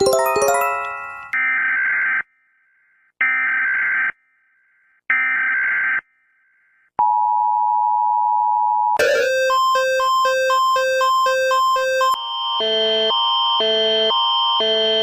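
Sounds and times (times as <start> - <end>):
alternating pitch beeping: 0.0 - 1.4.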